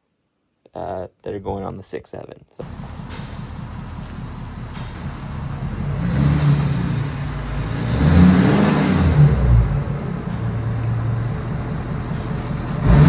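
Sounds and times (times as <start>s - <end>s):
diesel engine revving: 2.6s - 13.0s.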